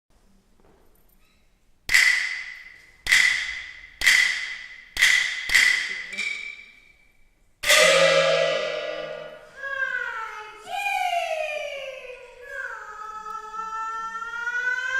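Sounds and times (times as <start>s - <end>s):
loud held accompaniment note: 7.6s - 9.7s
ringing percussion strikes: 7.6s - 9.7s.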